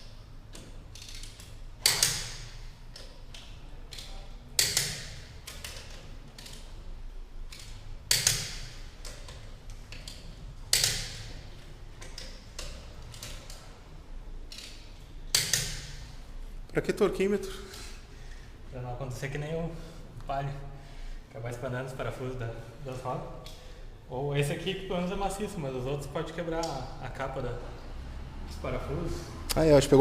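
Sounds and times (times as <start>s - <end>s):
torque wrench clicking: 0.0s - 6.8s, 7.5s - 11.4s, 14.5s - 16.1s.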